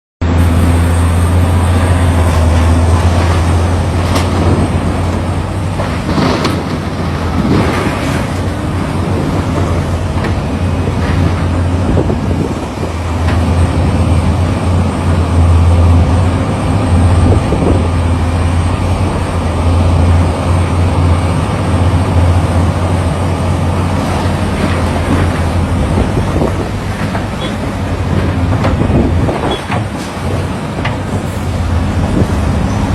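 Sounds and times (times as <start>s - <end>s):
diesel engine droning: 0.2s - 32.9s.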